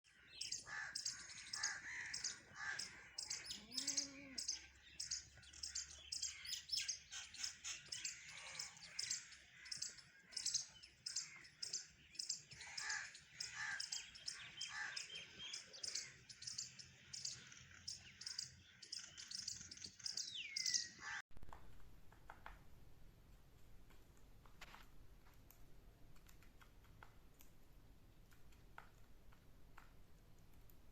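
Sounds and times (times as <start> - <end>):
birds chirping and tweeting: 0.0 - 21.2.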